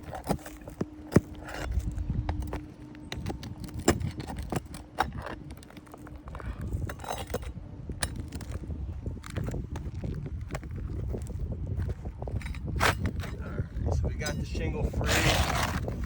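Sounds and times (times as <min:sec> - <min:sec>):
tool scraping under shingles: 0:00.0 - 0:16.0.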